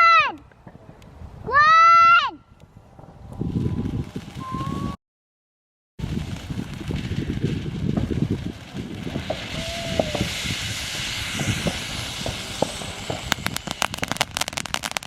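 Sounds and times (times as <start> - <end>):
firework crackling rapidly: 3.5 - 5.0, 6.0 - 15.0
firework fountain hissing: 6.0 - 15.0.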